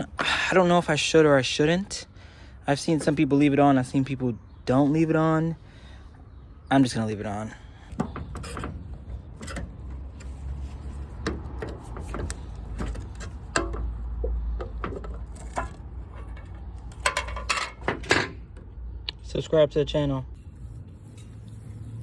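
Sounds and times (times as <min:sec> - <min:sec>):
tools and containers clicking: 0:14.6 - 0:18.4.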